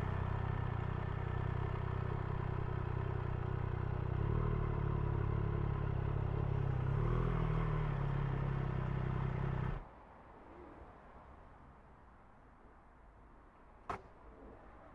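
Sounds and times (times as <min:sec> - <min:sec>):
motorcycle engine running: 0:00.0 - 0:09.8.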